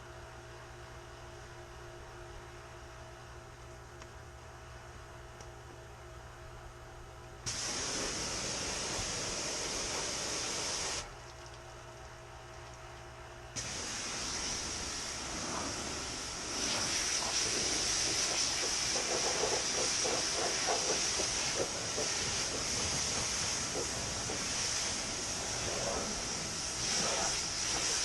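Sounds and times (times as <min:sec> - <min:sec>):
spraying hiss: 0:07.5 - 0:11.1, 0:13.6 - 0:28.0.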